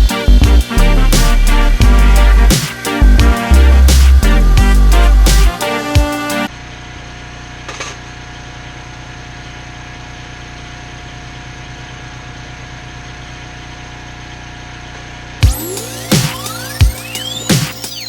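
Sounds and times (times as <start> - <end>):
electronic music: 0.0 - 6.5, 15.4 - 18.0.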